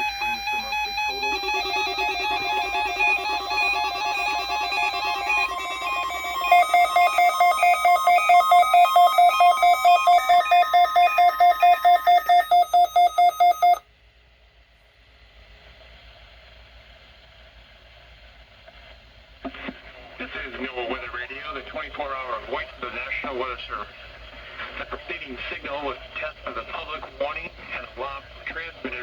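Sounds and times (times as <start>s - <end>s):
electronic warning alarm tones: 0.0s - 13.8s.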